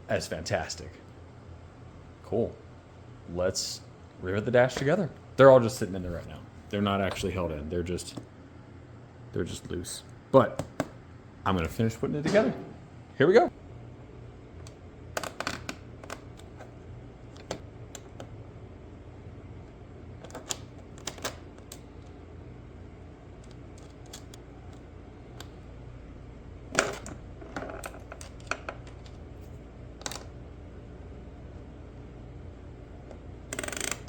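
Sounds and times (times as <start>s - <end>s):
steady low hum: 0.0s - 34.0s
clicks and taps of hand tools: 10.6s - 11.0s.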